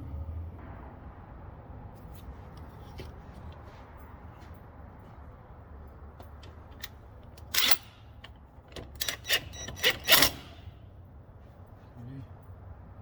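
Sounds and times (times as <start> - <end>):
metal tool parts clinking: 6.8 - 8.4, 9.0 - 10.6.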